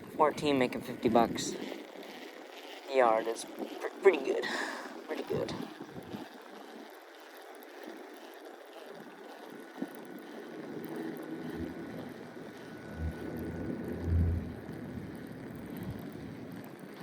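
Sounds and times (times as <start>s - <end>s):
wind buffeting microphone: 0.0s - 1.9s, 5.2s - 6.3s, 11.4s - 16.7s.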